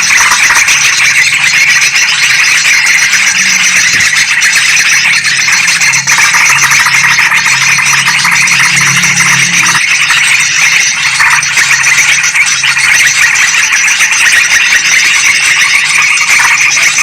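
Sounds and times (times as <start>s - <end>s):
low hum: 3.0s - 10.7s.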